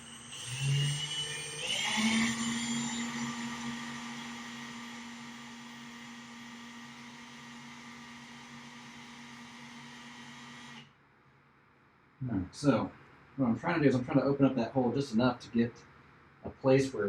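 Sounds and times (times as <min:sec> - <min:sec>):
electric drill drilling into wood: 0:00.0 - 0:10.9.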